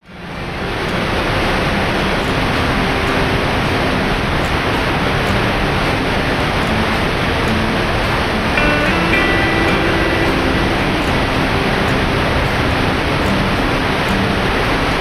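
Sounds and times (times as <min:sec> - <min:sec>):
waterfall roaring: 0:00.0 - 0:15.0.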